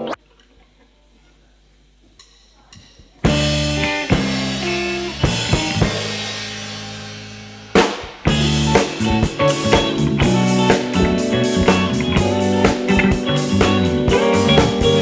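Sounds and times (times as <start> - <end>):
drum strokes: 2.2 - 15.0
live rock band playing: 3.3 - 15.0.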